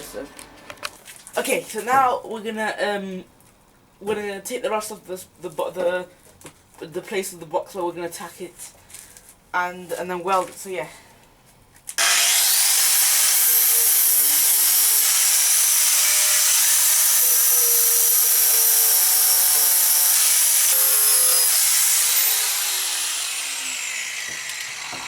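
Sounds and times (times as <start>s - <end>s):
angle grinder grinding metal: 12.0s - 25.0s.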